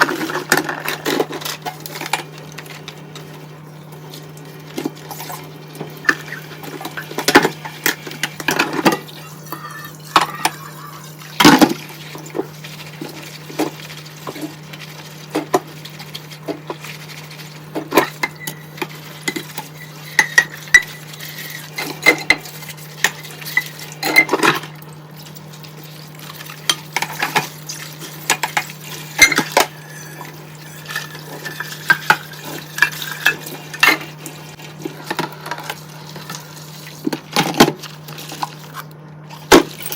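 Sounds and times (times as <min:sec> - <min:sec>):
dishes clinking in a sink: 0:17.8 - 0:24.7, 0:28.2 - 0:34.1.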